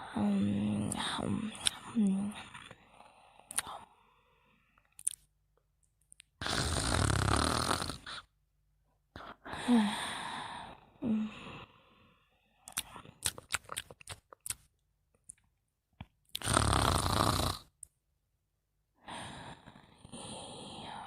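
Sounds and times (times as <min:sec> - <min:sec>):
person snoring: 0:06.4 - 0:08.3, 0:16.4 - 0:17.7, 0:19.1 - 0:21.0.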